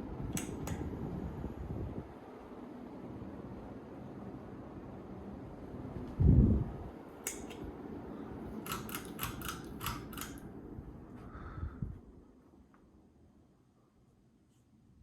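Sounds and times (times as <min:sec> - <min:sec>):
ceiling fan running: 0:00.0 - 0:15.0
sharp clicks: 0:00.3 - 0:00.8, 0:07.2 - 0:07.6, 0:08.6 - 0:10.4.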